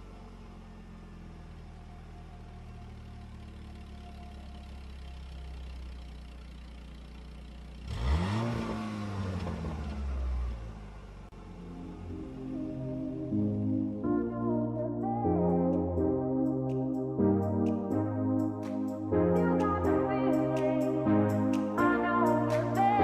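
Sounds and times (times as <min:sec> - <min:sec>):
motorcycle engine idling and revving: 0:00.0 - 0:13.3.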